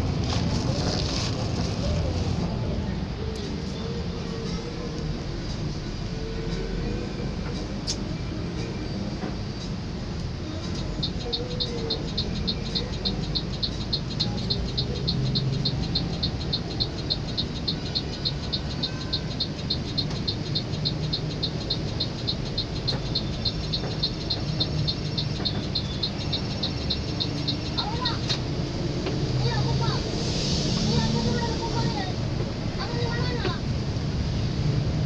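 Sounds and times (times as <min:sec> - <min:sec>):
bus engine rumble: 0:00.0 - 0:35.0
high-pitched chirping: 0:10.4 - 0:28.3.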